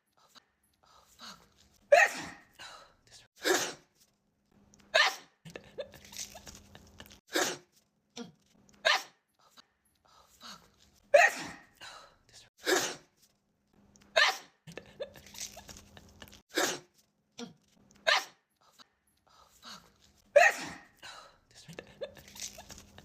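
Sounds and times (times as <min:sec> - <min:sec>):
woman sneezing: 0:01.9 - 0:02.5, 0:03.4 - 0:03.9, 0:07.3 - 0:07.7, 0:11.1 - 0:11.7, 0:12.6 - 0:13.1, 0:16.5 - 0:16.9, 0:20.4 - 0:21.0.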